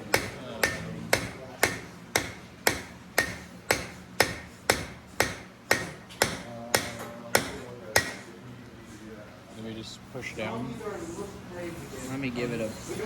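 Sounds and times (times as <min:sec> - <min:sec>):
hammer tapping on metal: 0:00.0 - 0:08.3.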